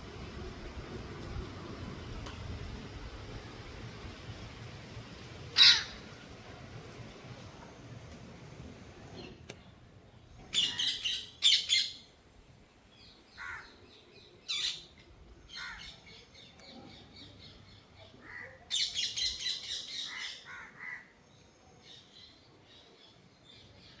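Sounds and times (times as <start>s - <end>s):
parrot squawking: 5.6s - 6.1s.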